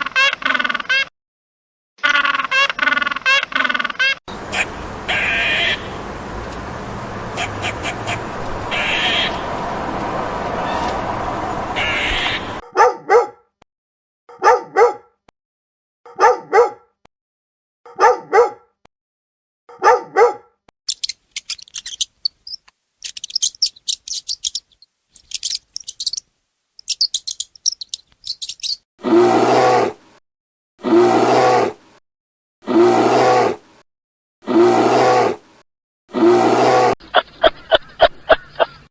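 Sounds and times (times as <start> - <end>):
repeated animal calls: 0.0 - 1.1, 2.0 - 5.9, 7.4 - 9.4, 11.8 - 13.3, 20.9 - 26.2, 26.8 - 28.8
dog barking: 12.6 - 13.5, 14.3 - 15.2, 16.1 - 17.0, 17.9 - 18.8, 19.7 - 20.6
high rapid chirping: 20.9 - 28.8.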